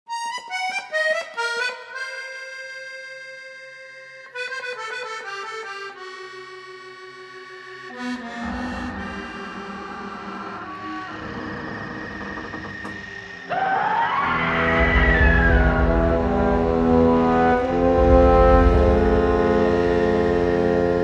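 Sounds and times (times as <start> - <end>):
instrumental music: 0.1 - 13.5, 14.2 - 21.0
low rumbling noise: 8.2 - 21.0.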